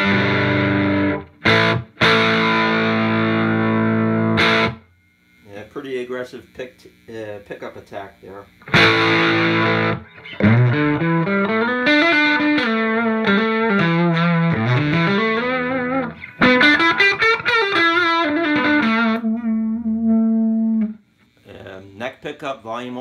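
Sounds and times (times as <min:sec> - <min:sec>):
clean electric guitar lead: 0:00.0 - 0:04.8, 0:08.6 - 0:21.0.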